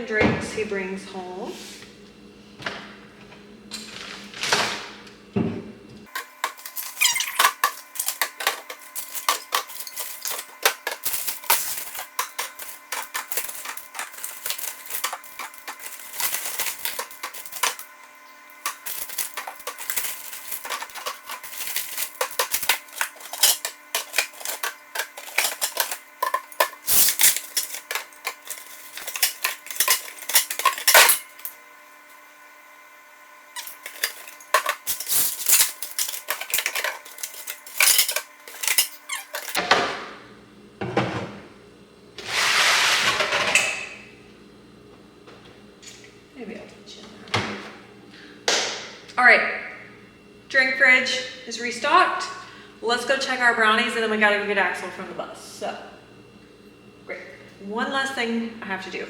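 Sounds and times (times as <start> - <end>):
drink cans clinking: 6.1 - 18.0, 18.6 - 31.5, 33.6 - 39.6.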